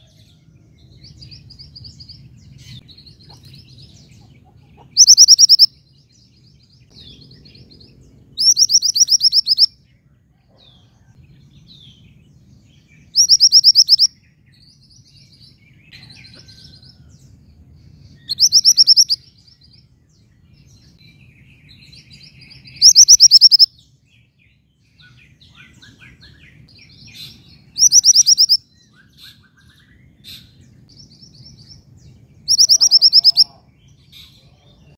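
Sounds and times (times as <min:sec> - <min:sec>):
soft bird chirps: 0:00.0 - 0:17.1, 0:17.9 - 0:34.9
songbird high trill: 0:04.9 - 0:05.8, 0:08.4 - 0:09.8, 0:13.0 - 0:14.2, 0:18.2 - 0:19.4, 0:22.0 - 0:23.8, 0:25.0 - 0:29.6, 0:32.4 - 0:33.7.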